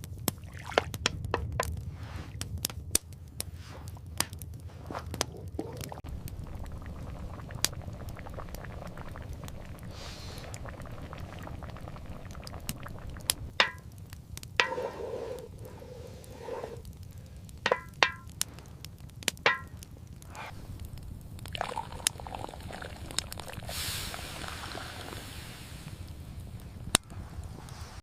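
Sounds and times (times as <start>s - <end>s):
steady low rumble: 4.0s - 14.6s.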